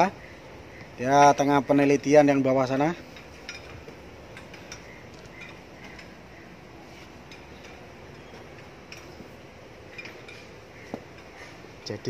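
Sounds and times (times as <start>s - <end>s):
low background noise: 0.0s - 12.0s
metallic clicks of tools: 3.1s - 6.4s.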